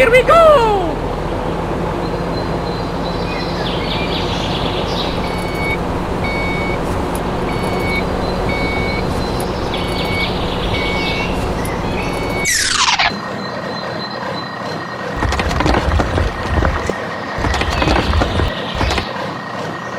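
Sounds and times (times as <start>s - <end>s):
small construction vehicle running: 0.1s - 13.1s, 15.2s - 19.5s
birds chirping: 1.3s - 13.2s, 15.2s - 19.1s
reversing alarm beeps: 5.2s - 6.8s, 7.5s - 14.5s.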